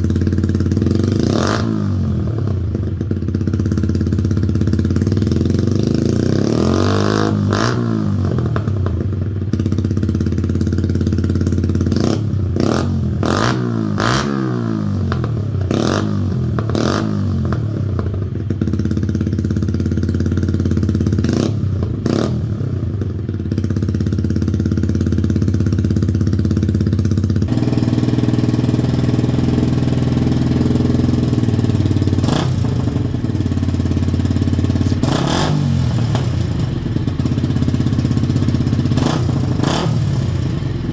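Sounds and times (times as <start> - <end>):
motorcycle engine revving: 0.0 - 40.9
exhaust cracks: 27.4 - 40.9.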